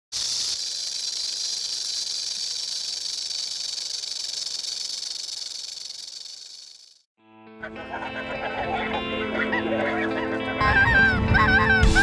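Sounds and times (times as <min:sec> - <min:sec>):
high-pitched static hiss: 0:00.2 - 0:07.0.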